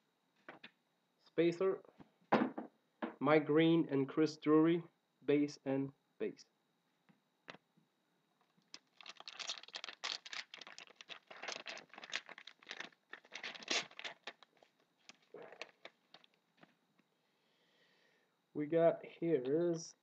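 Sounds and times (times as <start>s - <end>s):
foil wrapper tearing and crinkling: 8.6s - 16.4s.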